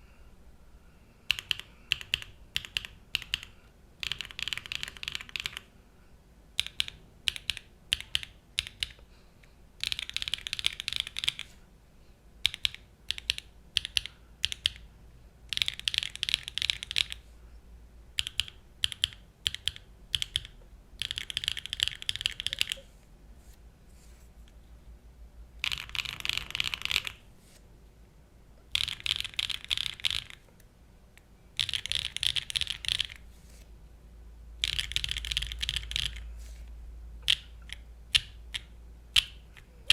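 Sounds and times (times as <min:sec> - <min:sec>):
mechanical keyboard typing: 0:01.3 - 0:05.7, 0:06.6 - 0:09.0, 0:09.8 - 0:11.5, 0:12.4 - 0:14.9, 0:15.5 - 0:17.2, 0:18.2 - 0:22.8, 0:25.6 - 0:27.2, 0:28.7 - 0:30.5, 0:31.6 - 0:33.2, 0:34.6 - 0:36.3, 0:37.2 - 0:39.9.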